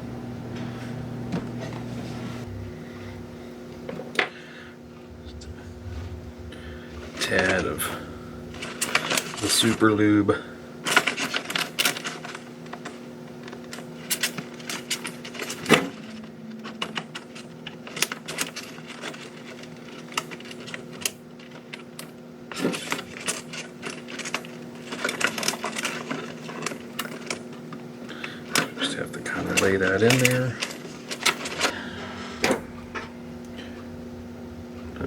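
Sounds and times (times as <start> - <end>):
steady low hum: 0.0 - 11.1, 22.2 - 35.0.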